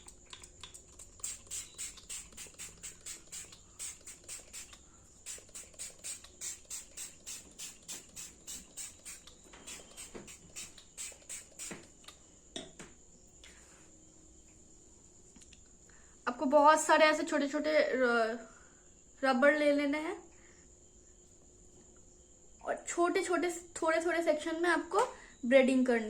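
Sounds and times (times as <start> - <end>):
spray bottle misting water: 0.0 - 12.1.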